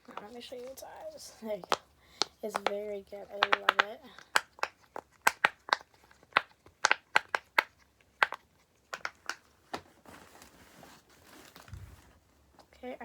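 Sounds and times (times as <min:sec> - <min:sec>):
soft rustle: 0:09.4 - 0:13.0.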